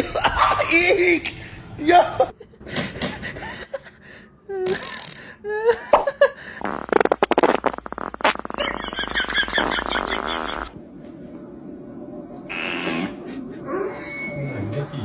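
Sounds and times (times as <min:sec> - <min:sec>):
pet fart buzzy pulses: 0:06.6 - 0:10.8, 0:12.5 - 0:13.2.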